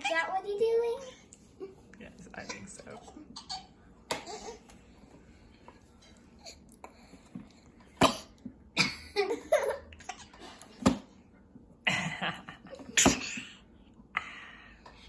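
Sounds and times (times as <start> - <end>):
person coughing: 8.0 - 9.4, 12.9 - 13.6.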